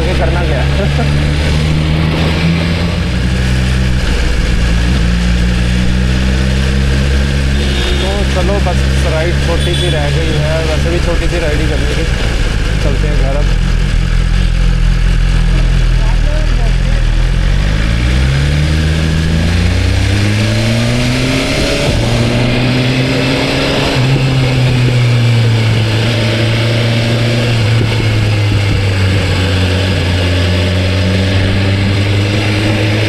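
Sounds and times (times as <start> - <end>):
motorcycle engine accelerating: 0.0 - 33.0.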